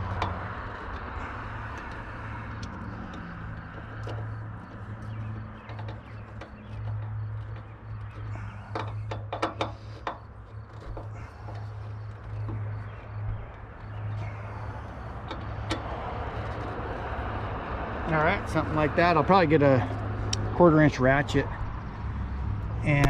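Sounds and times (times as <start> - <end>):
hose clamp clicks and scrapes: 0.0 - 17.5
steady low hum: 0.0 - 23.0.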